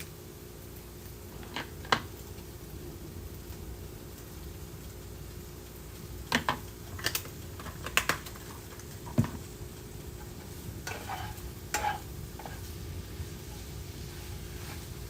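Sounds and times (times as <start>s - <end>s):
faint sizzle: 0.0s - 15.0s
utensil scraping a frying pan: 7.6s - 15.0s.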